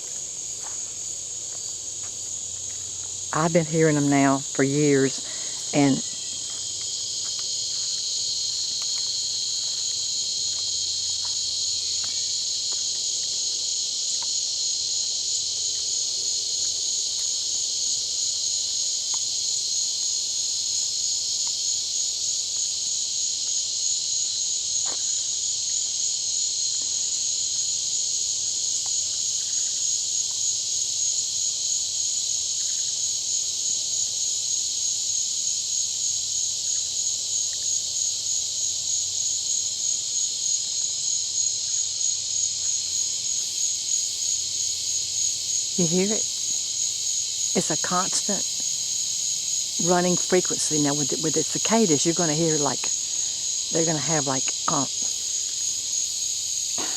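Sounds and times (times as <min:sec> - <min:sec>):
insects buzzing: 0:00.0 - 0:56.9.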